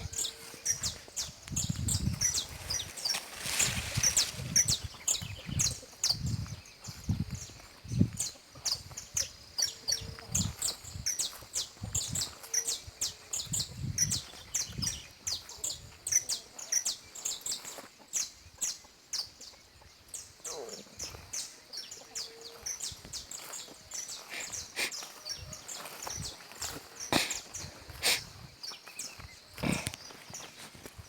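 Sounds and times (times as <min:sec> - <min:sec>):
finch singing high chirps: 0:00.0 - 0:19.4.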